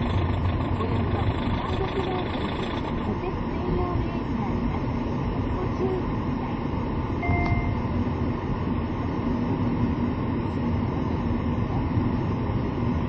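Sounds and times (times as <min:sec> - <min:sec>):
car engine knocking: 0:00.0 - 0:04.1
short beep: 0:07.2 - 0:07.8.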